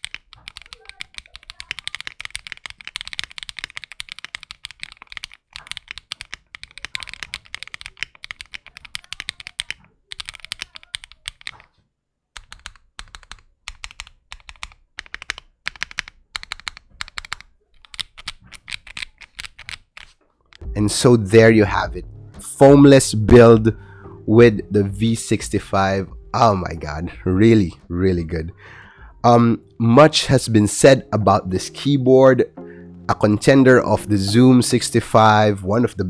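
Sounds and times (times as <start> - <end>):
mechanical keyboard typing: 0.0 - 11.7, 12.4 - 20.7.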